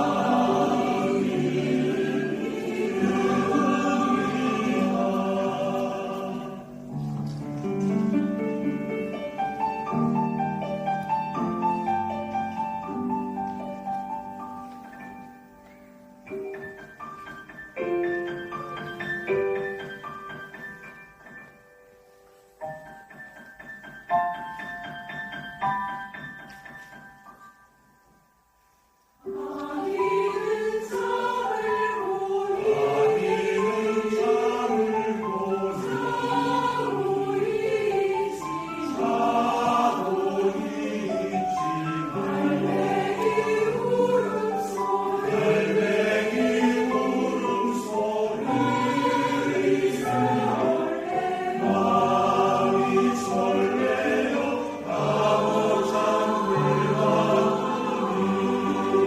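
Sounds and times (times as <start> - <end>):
choir singing: 0.0 - 14.6, 29.2 - 59.0.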